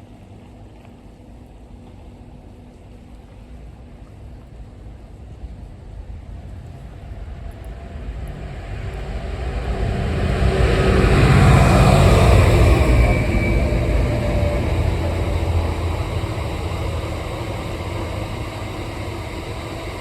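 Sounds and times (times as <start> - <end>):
diesel train engine rumble: 3.3 - 20.0.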